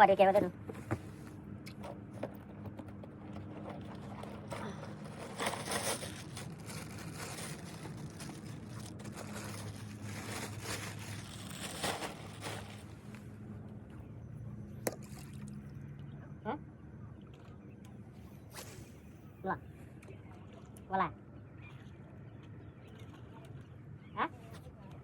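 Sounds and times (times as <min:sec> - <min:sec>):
water sloshing and splashing: 0:00.6 - 0:13.4, 0:14.8 - 0:15.9.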